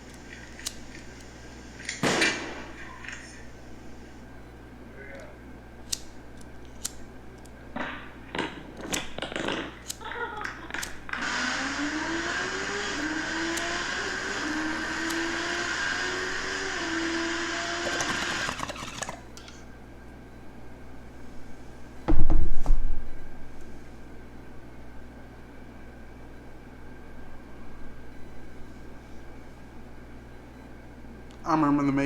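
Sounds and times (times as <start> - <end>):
sharp clicks: 5.8 - 7.6, 17.7 - 19.6.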